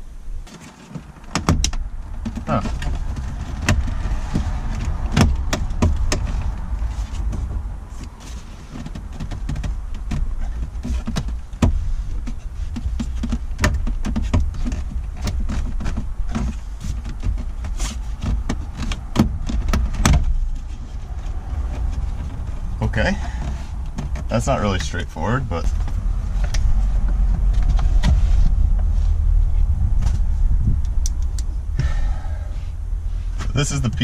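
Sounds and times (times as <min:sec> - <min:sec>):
low rumble: 0:11.4 - 0:34.0.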